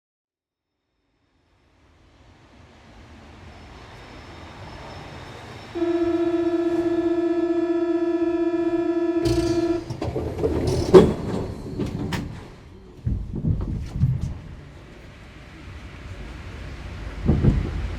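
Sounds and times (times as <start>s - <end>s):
electric buzzer: 5.8s - 9.9s
train doors slamming shut: 9.2s - 14.7s, 17.2s - 17.9s.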